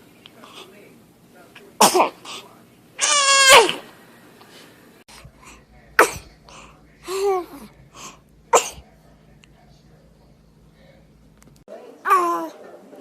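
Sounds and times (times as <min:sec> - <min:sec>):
baby sneezing: 0:01.8 - 0:02.4, 0:03.0 - 0:03.9, 0:06.0 - 0:06.3, 0:08.5 - 0:08.8.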